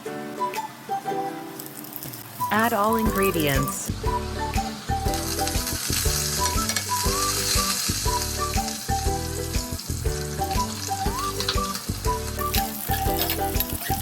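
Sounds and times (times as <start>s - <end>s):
background music with steady beat: 2.5s - 14.0s
food sizzling in hot oil: 3.9s - 14.0s.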